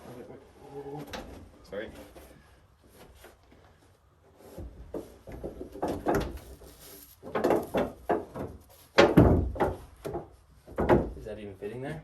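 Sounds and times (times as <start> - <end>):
wooden slabs knocking and scraping: 4.4 - 11.2.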